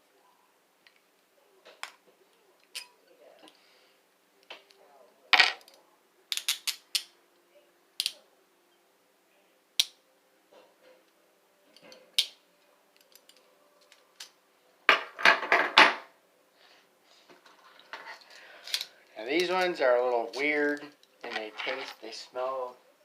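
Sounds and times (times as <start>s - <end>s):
handcuffs clicking and clinking: 2.6s - 3.5s, 5.6s - 7.2s, 8.0s - 8.2s, 11.7s - 14.4s, 18.2s - 22.0s.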